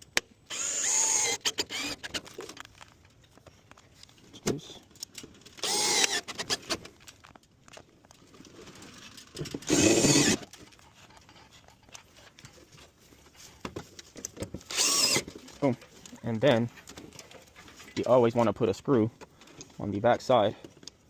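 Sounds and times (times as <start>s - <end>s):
cordless drill motor spinning: 0.5s - 2.6s, 5.6s - 6.8s, 9.5s - 10.5s, 14.6s - 15.4s.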